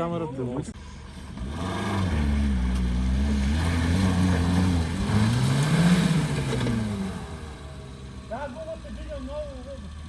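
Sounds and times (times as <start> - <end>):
diesel engine revving: 0.8 - 10.0.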